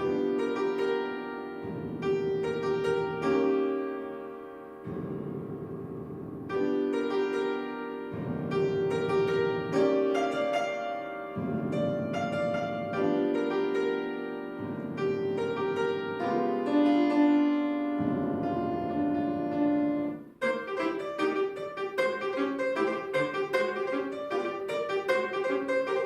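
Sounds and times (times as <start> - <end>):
solo piano chords: 0.0 - 26.0.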